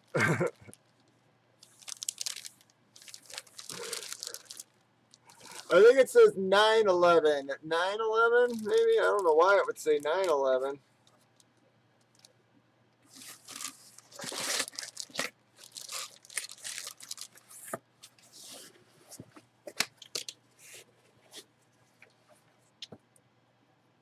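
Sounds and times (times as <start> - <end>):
plastic bag crinkling: 0.0 - 6.0, 8.4 - 10.4, 11.1 - 12.3, 13.1 - 17.8.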